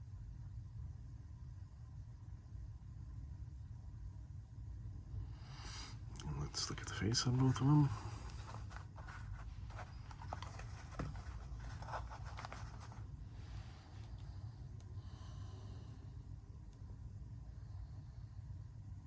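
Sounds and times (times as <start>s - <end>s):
steady low hum: 0.0s - 19.0s
soft handling clicks and rustles: 6.2s - 15.0s.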